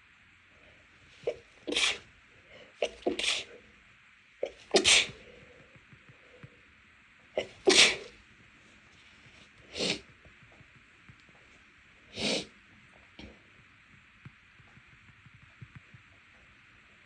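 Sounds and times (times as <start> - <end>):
stifled sneezes: 1.2 - 2.1, 2.8 - 3.6, 4.4 - 5.2, 7.4 - 8.1, 9.7 - 10.1, 12.1 - 12.5.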